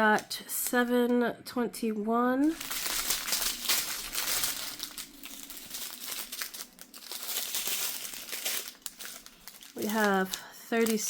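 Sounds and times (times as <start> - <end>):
plastic bags crinkling: 2.4 - 11.0.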